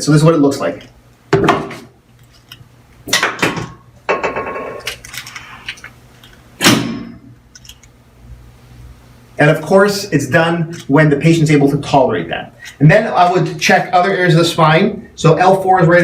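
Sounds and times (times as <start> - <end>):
adjustment table rattling: 2.4 - 5.8.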